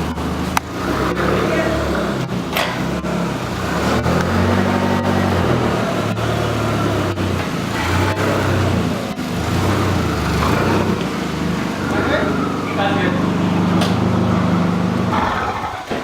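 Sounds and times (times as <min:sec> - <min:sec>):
car engine humming: 0:00.0 - 0:16.0.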